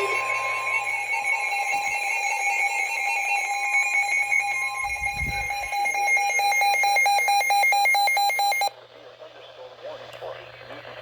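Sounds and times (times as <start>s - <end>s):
electronic alarm tone: 0.0s - 8.7s
rapid alarm beeping: 0.0s - 8.7s.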